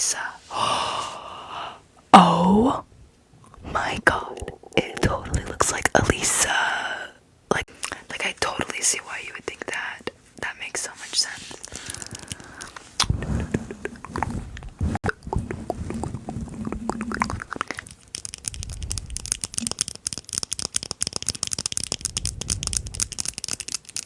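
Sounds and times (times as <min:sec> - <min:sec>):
scratching against microphone: 0:10.8 - 0:24.0
irregular clicks: 0:17.7 - 0:24.0.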